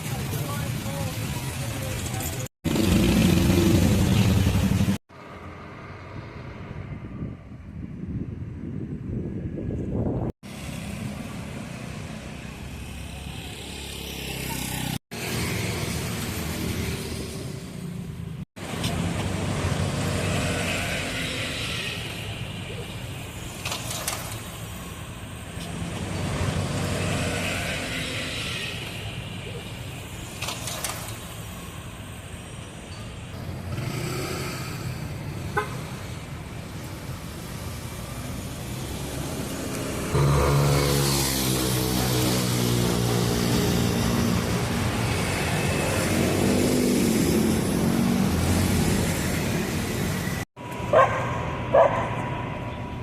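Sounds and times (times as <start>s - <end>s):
vehicle engines humming: 0.0s - 8.1s, 9.4s - 53.0s
street noise: 0.0s - 53.0s
car horn toot: 35.6s - 35.9s.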